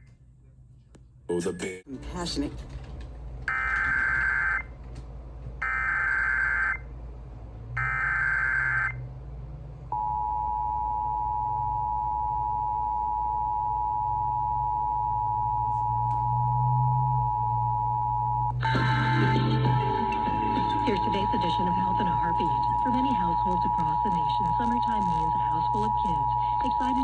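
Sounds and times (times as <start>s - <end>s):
two-tone alert signal: 19.6s - 27.0s.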